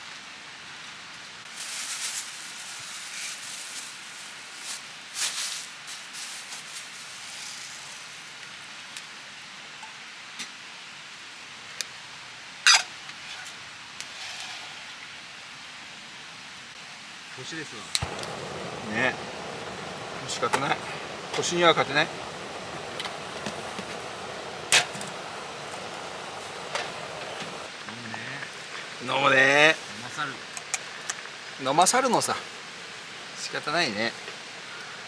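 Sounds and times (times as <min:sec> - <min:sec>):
river rushing: 0:17.4 - 0:34.7
campfire crackling and popping: 0:17.8 - 0:33.1.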